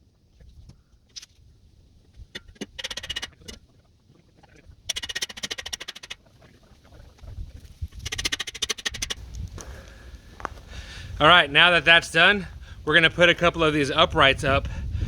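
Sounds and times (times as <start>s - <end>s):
power tool hammering stake: 2.3s - 3.6s, 4.9s - 6.2s, 8.0s - 9.2s.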